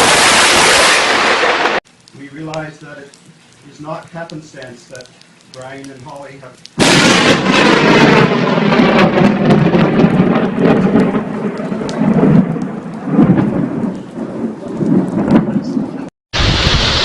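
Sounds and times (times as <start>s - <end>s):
thunder rumbling: 0.0s - 1.8s, 6.7s - 17.0s
heavy rain: 0.0s - 17.0s
raindrops tapping close by: 1.6s - 16.1s.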